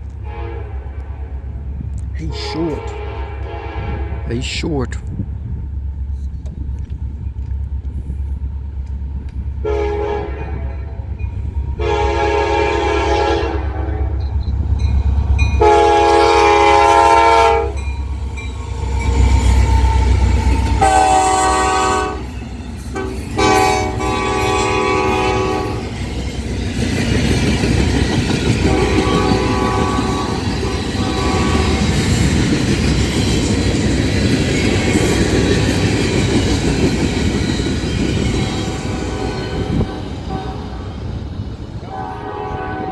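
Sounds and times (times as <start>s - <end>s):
train rumbling past: 0.0s - 42.9s
locomotive air horn blasts: 0.2s - 1.7s, 2.3s - 4.4s, 9.6s - 11.1s, 11.8s - 14.3s, 15.6s - 17.8s, 18.9s - 22.3s, 23.0s - 25.9s, 28.6s - 32.0s, 38.4s - 40.9s, 41.8s - 42.9s.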